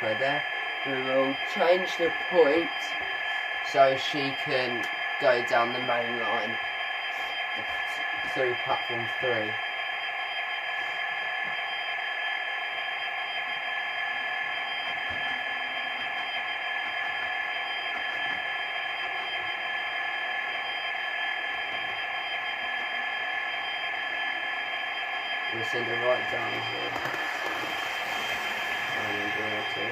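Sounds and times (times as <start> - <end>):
high-pitched whining tones: 0.0 - 29.9
electric locomotive hiss: 25.6 - 29.9.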